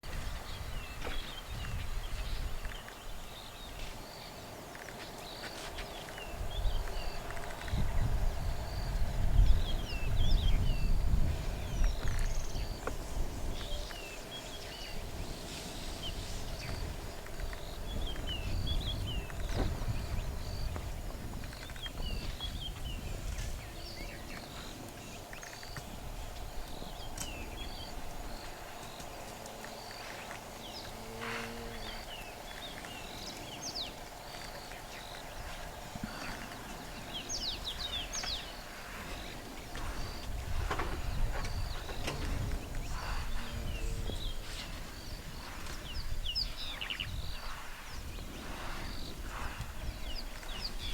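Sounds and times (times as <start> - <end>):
bird chirps: 26.7 - 50.9.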